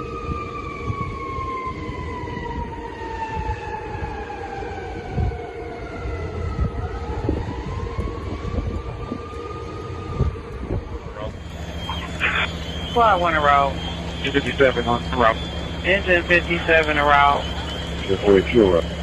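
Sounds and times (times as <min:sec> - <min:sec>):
fire truck siren wailing: 0:00.0 - 0:19.0
low rumble: 0:06.6 - 0:19.0.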